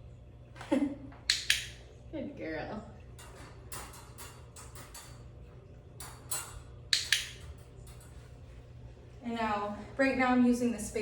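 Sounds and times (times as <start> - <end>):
low steady hum: 0.0 - 11.0
sharp clicks: 1.3 - 1.8.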